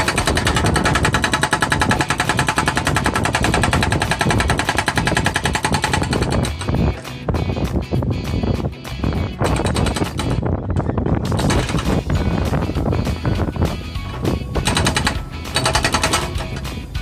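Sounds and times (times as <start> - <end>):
hydraulic breaker hammering concrete: 0.0 - 7.1, 9.4 - 10.4, 11.3 - 12.7, 14.1 - 16.9.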